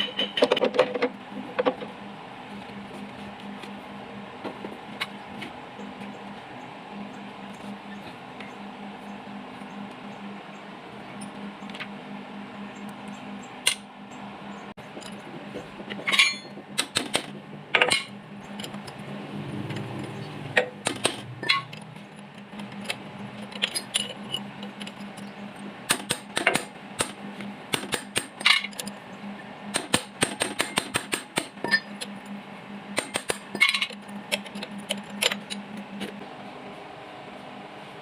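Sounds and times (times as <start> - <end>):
hand tools clinking on metal: 0.0 - 0.9, 16.0 - 16.6
steady low hum: 0.0 - 38.0.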